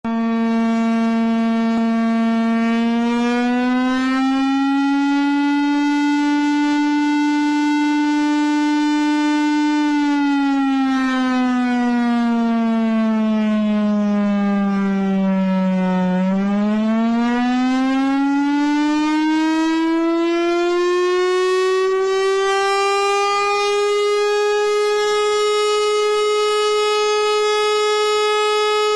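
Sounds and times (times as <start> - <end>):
air raid siren wailing: 0.0 - 28.9.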